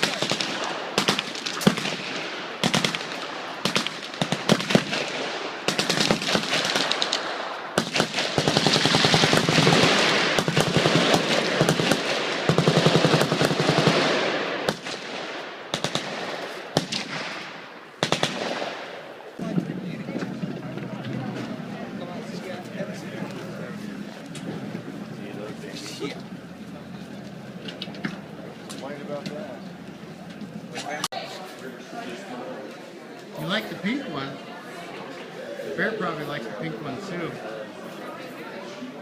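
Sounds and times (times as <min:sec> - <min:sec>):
machine guns firing: 0:00.0 - 0:19.0.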